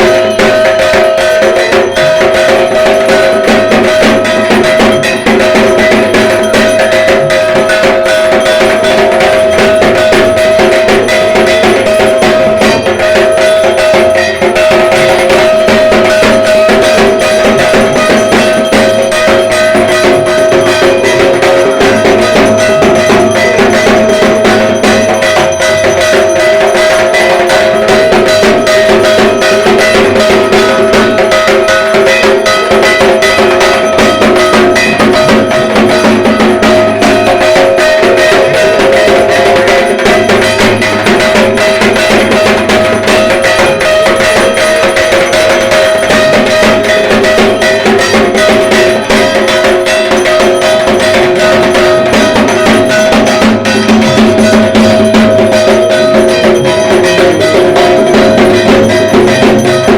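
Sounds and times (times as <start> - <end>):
drums playing fast rhythm: 0.0 - 59.9
metallic ringing: 0.0 - 59.9.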